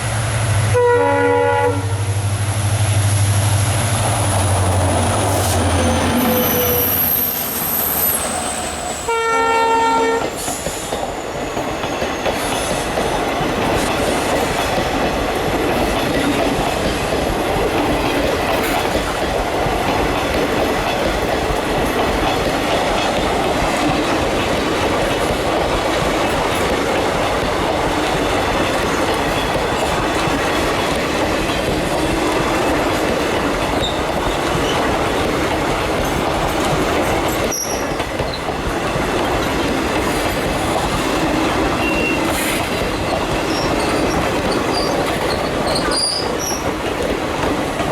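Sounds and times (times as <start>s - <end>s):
train wheels on rails: 0.0s - 47.9s
train horn blast: 0.7s - 2.2s, 9.0s - 10.4s
coaches clacking over rail joints: 3.0s - 47.9s.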